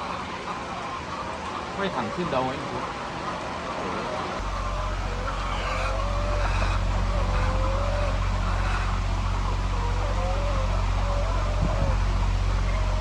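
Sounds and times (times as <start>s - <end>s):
motor humming: 4.4s - 13.0s
thin wavering squeals: 4.4s - 13.0s.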